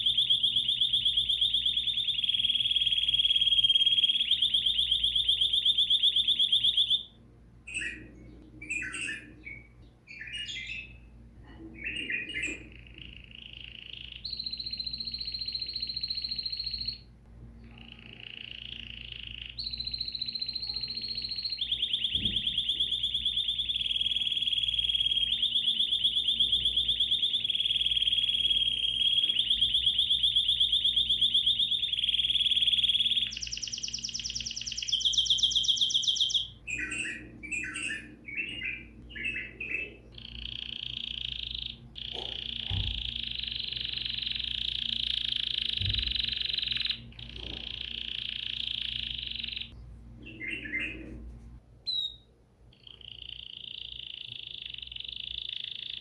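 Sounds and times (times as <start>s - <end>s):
songbird trilling and chirping: 0.0s - 11.2s, 11.8s - 51.2s, 51.9s - 56.0s.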